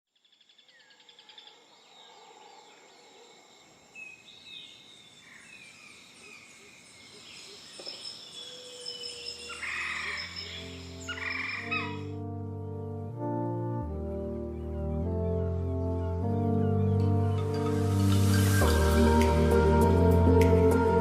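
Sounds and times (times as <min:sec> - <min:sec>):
birds chirping: 0:00.7 - 0:12.1
low music notes: 0:10.4 - 0:21.0.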